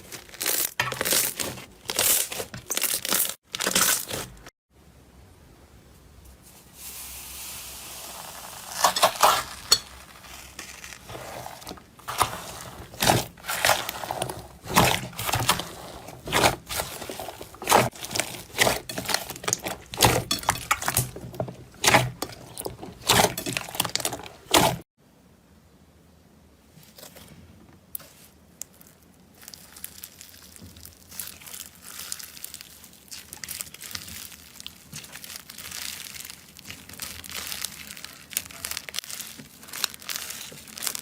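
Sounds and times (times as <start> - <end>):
slime crunching crackles: 0.0 - 4.5, 8.0 - 24.8, 28.0 - 41.0.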